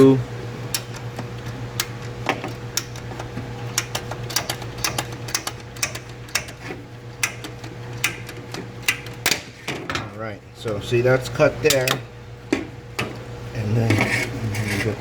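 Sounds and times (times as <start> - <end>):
pipe cutter clicking: 0.7 - 9.5.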